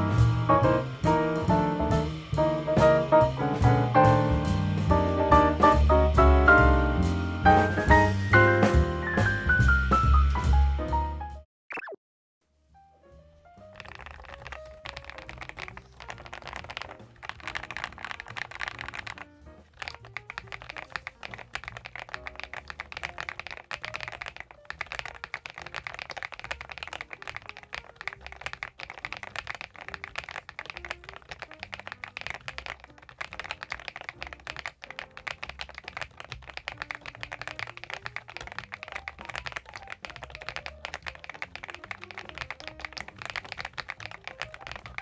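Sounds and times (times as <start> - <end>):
fast typing on mechanical keyboard: 13.7 - 45.0.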